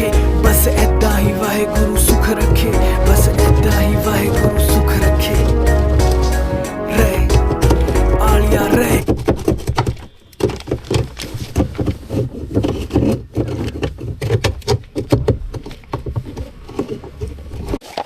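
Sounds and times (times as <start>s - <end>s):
low motor hum: 0.7s - 9.0s
water and clothes sloshing: 2.0s - 10.2s.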